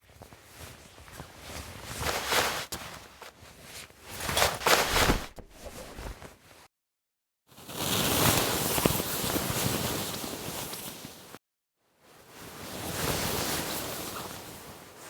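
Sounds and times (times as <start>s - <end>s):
fabric rustling: 0.3s - 6.7s
cloth swishes: 4.1s - 6.6s.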